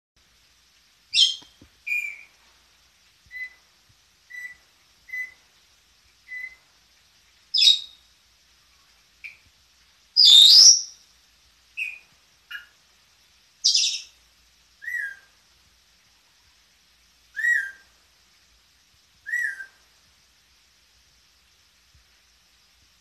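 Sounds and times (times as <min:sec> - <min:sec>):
parrot high-pitched calls: 0:01.1 - 0:02.4, 0:03.3 - 0:03.7, 0:04.3 - 0:05.4, 0:06.2 - 0:06.6, 0:07.5 - 0:08.0, 0:10.2 - 0:11.0, 0:11.8 - 0:12.8, 0:13.6 - 0:14.2, 0:14.8 - 0:15.4, 0:17.3 - 0:17.9, 0:19.2 - 0:19.8.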